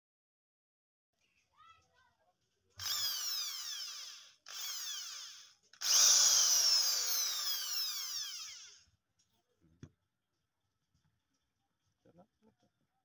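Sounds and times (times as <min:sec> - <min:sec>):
electric drill whining: 0:02.8 - 0:08.9.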